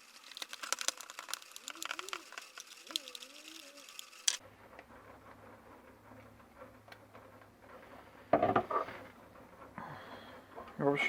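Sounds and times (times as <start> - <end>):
handling noise and small clicks: 0.2 - 4.4.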